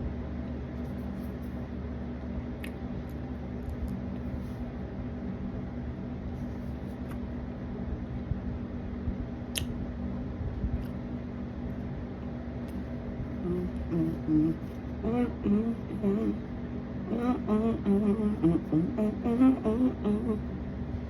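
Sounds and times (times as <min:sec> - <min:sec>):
steady low hum: 0:00.0 - 0:21.0.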